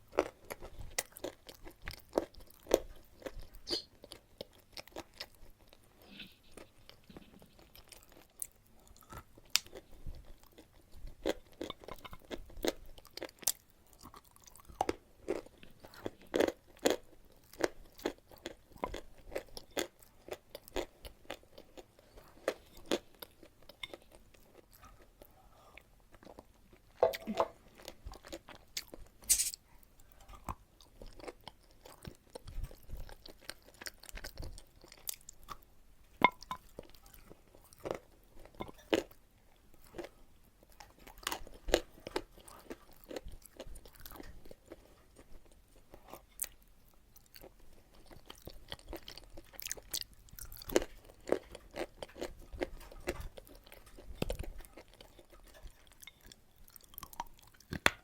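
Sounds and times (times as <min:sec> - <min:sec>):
chewing chalk crunches: 0:47.3 - 0:58.0.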